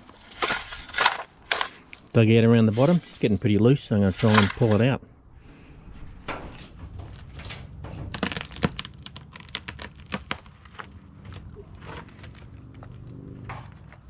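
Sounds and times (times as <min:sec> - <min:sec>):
roots cracking and snapping: 0:00.0 - 0:03.4, 0:04.1 - 0:04.8.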